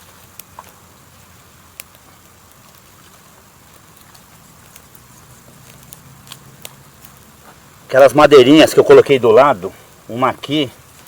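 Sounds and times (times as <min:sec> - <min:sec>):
campfire hissing: 0:00.0 - 0:11.0
fire crackling and popping: 0:00.0 - 0:11.0.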